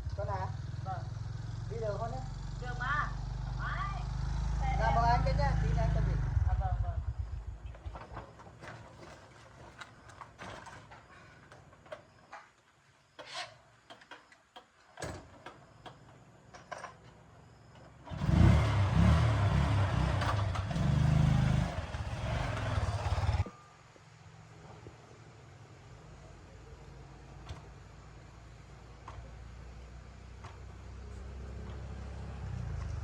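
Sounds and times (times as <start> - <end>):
small motorbike engine revving: 0.1 - 7.5, 18.0 - 23.5.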